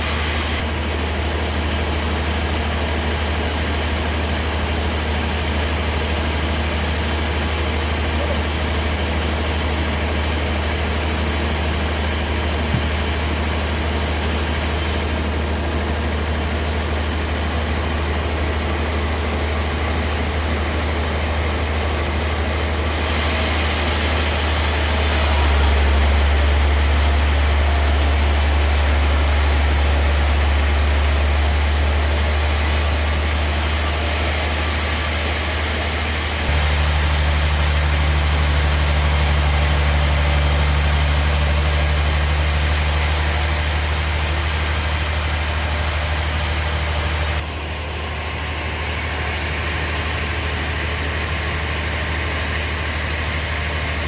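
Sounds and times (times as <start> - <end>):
bandsaw sawmill humming: 0.0 - 54.0
bright saw hiss: 22.4 - 47.4.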